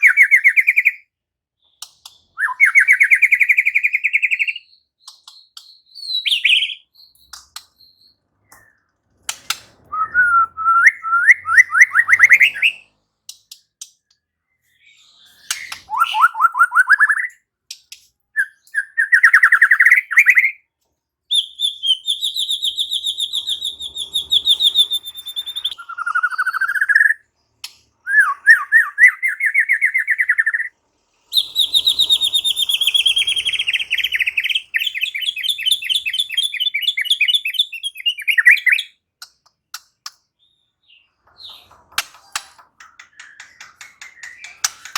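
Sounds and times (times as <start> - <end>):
songbird singing trills: 14.5 - 17.4, 21.3 - 27.3, 31.3 - 39.0.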